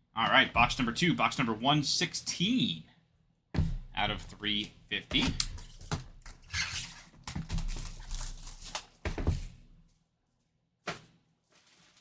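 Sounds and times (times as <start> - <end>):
box knocks: 3.6 - 4.2, 5.1 - 6.2, 9.1 - 9.6
plastic shrink-wrap crinkling: 5.6 - 9.0, 11.4 - 12.0.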